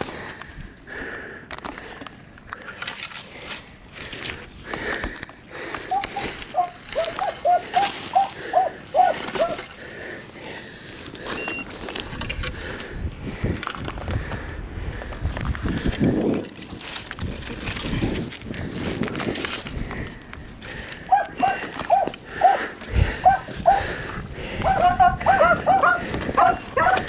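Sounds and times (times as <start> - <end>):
brush crackling: 0.0 - 27.0
dogs barking: 5.8 - 9.8, 20.7 - 27.0
footsteps: 16.4 - 27.0.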